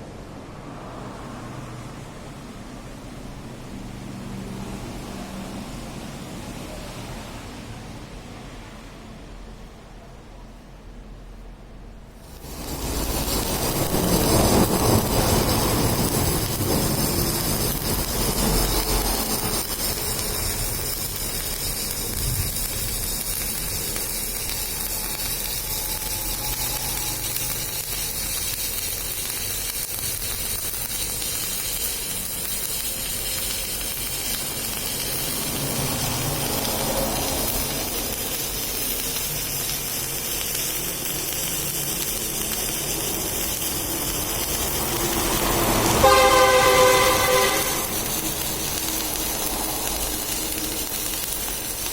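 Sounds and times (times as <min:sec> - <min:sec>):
welding arc sizzling: 0:12.1 - 0:51.9.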